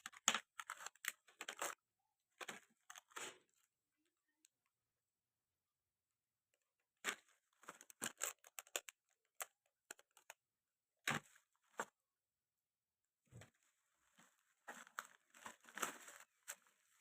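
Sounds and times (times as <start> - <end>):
packaging clicks and crinkles: 0.0 - 1.8, 7.2 - 10.4, 14.7 - 16.8.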